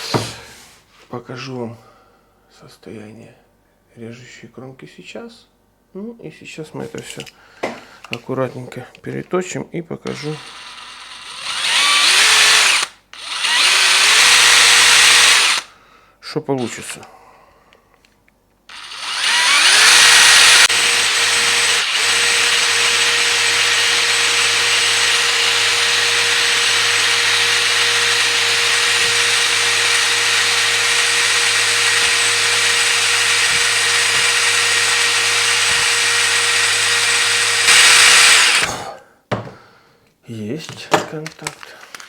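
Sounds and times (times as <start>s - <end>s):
rotary tool whining: 10.1s - 15.7s, 18.7s - 38.7s.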